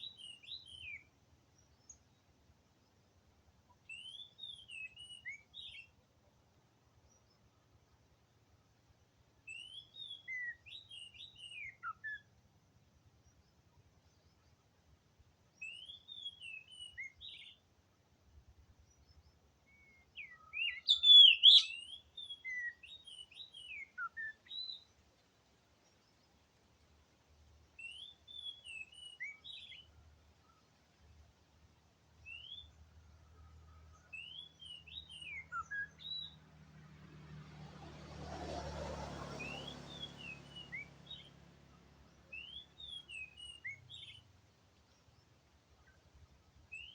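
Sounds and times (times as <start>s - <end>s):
bird singing whistled phrases: 3.9s - 5.9s, 9.5s - 12.2s, 15.6s - 17.6s, 19.7s - 24.9s, 27.8s - 29.9s, 32.2s - 32.8s, 34.0s - 36.4s, 39.4s - 41.3s, 42.3s - 44.2s.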